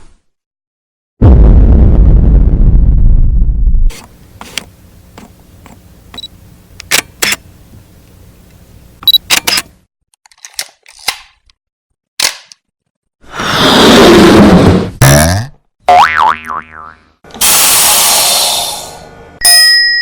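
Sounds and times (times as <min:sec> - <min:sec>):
sharp mechanical clicks: 0:03.9 - 0:07.5, 0:08.5 - 0:11.3.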